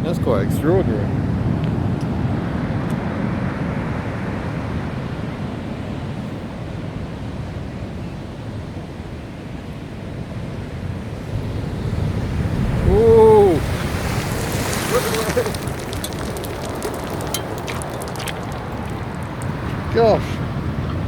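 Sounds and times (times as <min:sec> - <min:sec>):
wind buffeting microphone: 0:10.7 - 0:21.0
heavy surf breaking: 0:11.6 - 0:21.0.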